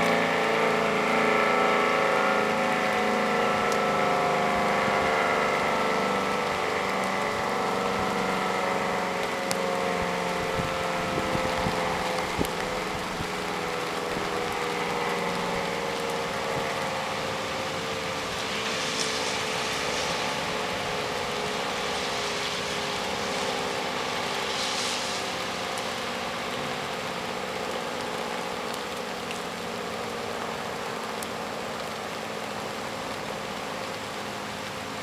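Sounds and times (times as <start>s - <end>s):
warning siren winding down: 0.0s - 25.0s.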